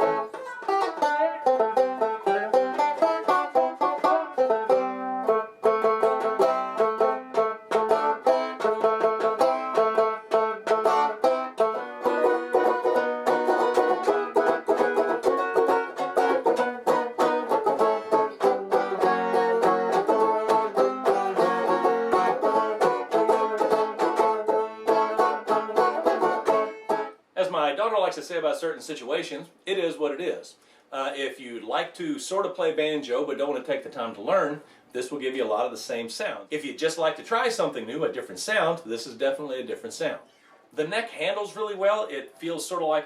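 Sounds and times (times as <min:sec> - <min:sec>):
banjo picking: 0:00.0 - 0:27.2.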